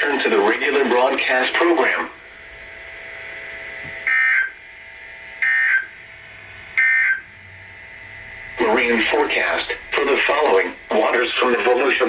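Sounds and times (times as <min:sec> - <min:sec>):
screeching data bursts: 0:04.1 - 0:04.6, 0:05.4 - 0:06.0, 0:06.8 - 0:07.4.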